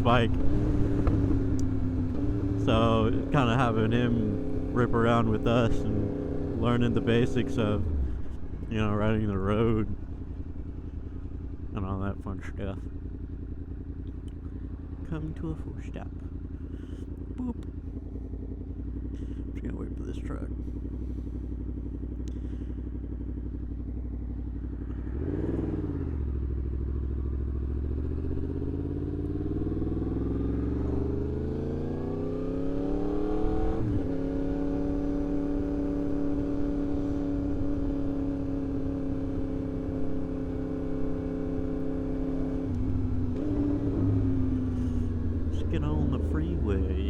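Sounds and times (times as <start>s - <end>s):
motorcycle accelerating away: 0.0s - 8.2s, 20.6s - 47.0s
motorcycle engine idling and revving: 0.0s - 47.0s.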